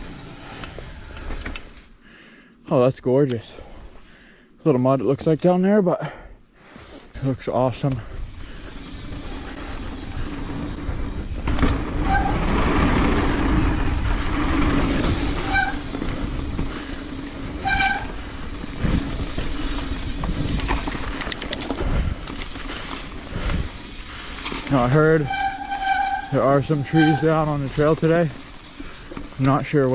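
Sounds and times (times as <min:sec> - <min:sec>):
bike tyres rattling on dirt: 0:07.6 - 0:29.9
short high squeaks: 0:15.2 - 0:16.2, 0:17.5 - 0:18.4, 0:25.0 - 0:27.7.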